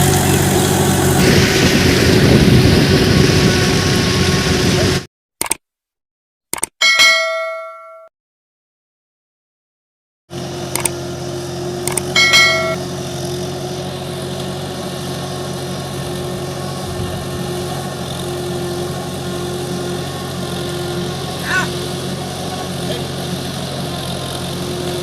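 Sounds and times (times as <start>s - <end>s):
engine hum: 0.0s - 5.1s, 10.3s - 25.0s
sharp clicks: 5.4s - 5.6s, 6.5s - 6.8s, 10.7s - 11.0s, 11.8s - 12.1s
short ringing tone: 6.8s - 8.1s, 11.9s - 12.8s.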